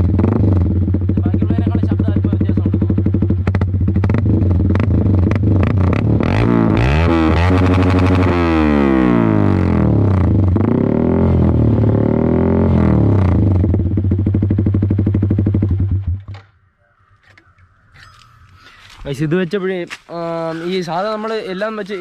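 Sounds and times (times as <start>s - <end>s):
motorcycle engine revving and idling: 0.0s - 16.4s.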